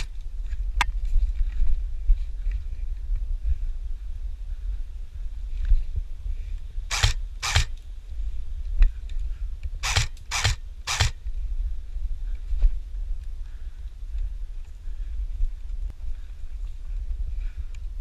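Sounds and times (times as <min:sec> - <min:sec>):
wind rumbling on microphone: 0:00.0 - 0:18.0
airsoft gun shots: 0:06.9 - 0:07.8, 0:09.8 - 0:11.2.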